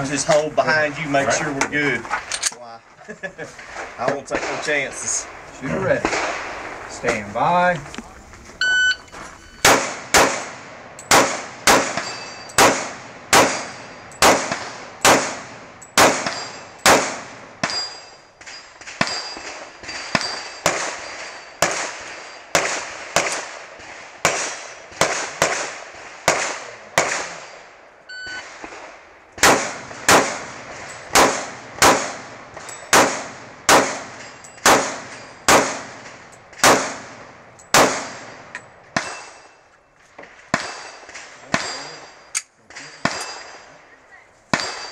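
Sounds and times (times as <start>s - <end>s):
pistol shots: 5.9s - 7.2s, 9.6s - 27.7s, 28.4s - 39.5s, 40.4s - 41.8s, 44.5s - 44.9s
shot timer beep: 8.6s - 9.7s, 28.1s - 28.4s.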